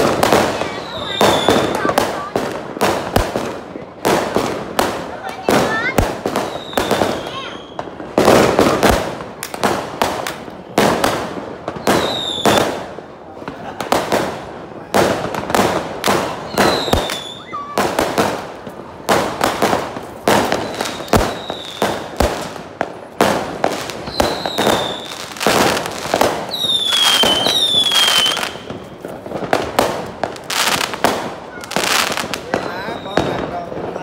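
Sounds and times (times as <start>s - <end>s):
fireworks bangs: 0.0s - 34.0s
falling whistles: 24.2s - 25.2s, 26.5s - 28.7s.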